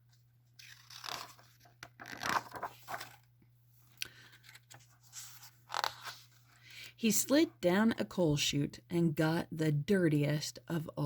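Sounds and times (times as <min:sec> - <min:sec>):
paper pages rustling: 0:00.5 - 0:03.3, 0:04.1 - 0:06.7.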